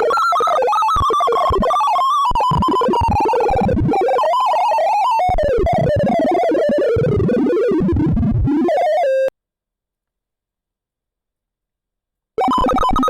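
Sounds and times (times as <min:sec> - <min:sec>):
fast synthesised beeps: 0:12.4 - 0:13.0.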